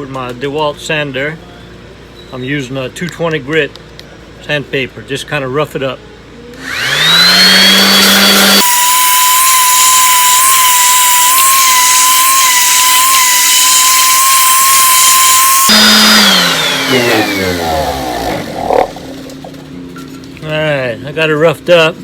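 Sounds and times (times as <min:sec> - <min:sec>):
electric sander running: 0:06.6 - 0:19.8.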